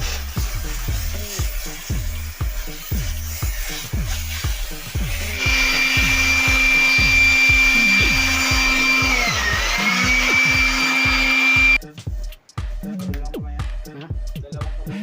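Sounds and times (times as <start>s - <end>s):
background music with beat: 0.0s - 15.0s
power tool motor whining: 5.2s - 11.8s.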